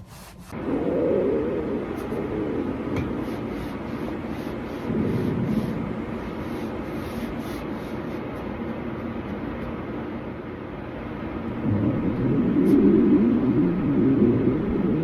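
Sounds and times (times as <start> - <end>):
stomach growling: 0.5 - 7.4, 11.4 - 15.0.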